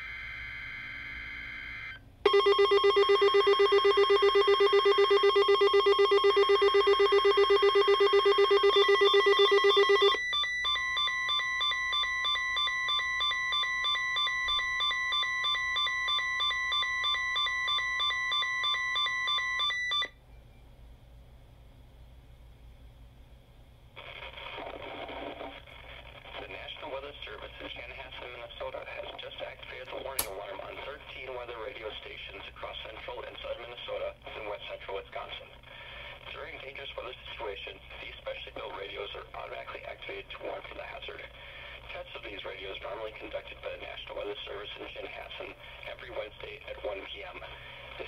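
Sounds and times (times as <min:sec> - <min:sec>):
pulsing buzzy alarm: 0:00.0 - 0:20.1.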